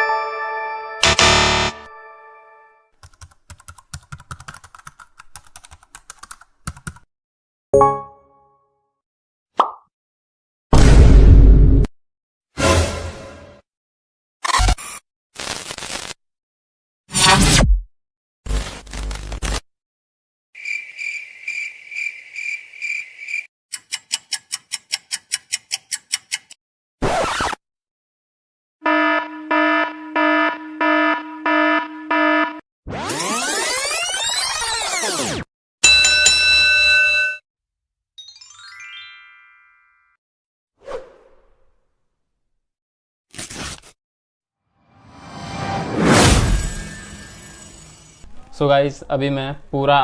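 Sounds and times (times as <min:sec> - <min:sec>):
loud hit with ringing tone: 0:01.0 - 0:01.8
computer keyboard typing: 0:03.0 - 0:07.1
ringing tone: 0:35.8 - 0:37.4.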